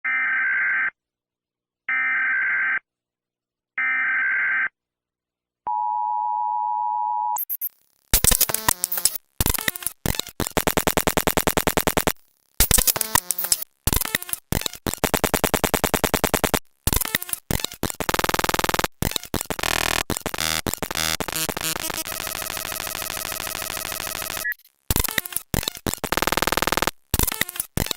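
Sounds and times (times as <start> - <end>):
screechy digital data bursts: 7.4 - 27.9.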